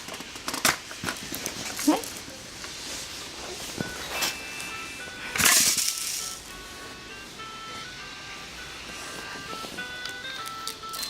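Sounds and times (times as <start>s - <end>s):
alarm clock beeping melody: 3.8s - 11.0s.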